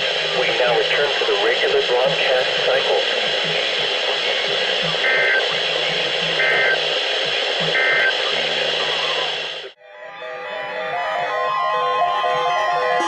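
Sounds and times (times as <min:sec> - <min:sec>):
radio static hiss: 0:00.0 - 0:09.8
raspy digital data bursts: 0:03.3 - 0:09.3.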